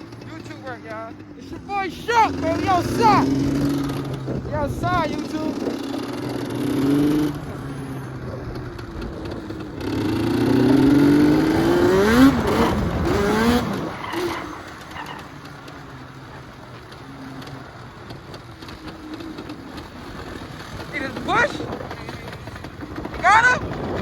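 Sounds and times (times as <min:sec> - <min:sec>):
vehicle engine revving: 0:00.0 - 0:24.0.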